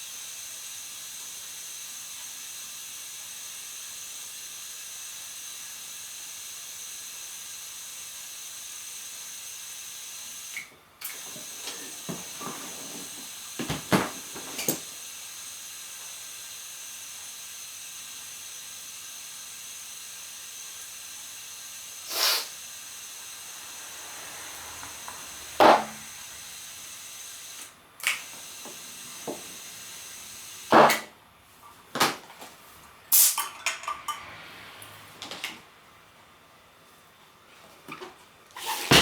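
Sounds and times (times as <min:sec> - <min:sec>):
compressed air hissing: 0:11.1 - 0:15.0, 0:21.8 - 0:31.0, 0:33.1 - 0:33.5
tools clattering: 0:11.6 - 0:14.9.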